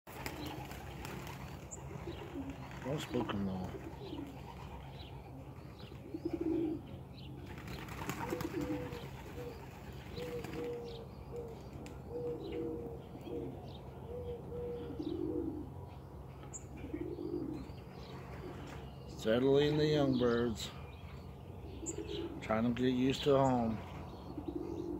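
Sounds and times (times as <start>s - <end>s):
wings flapping: 0.1s - 4.9s, 7.4s - 12.4s
pigeons cooing: 0.1s - 24.9s.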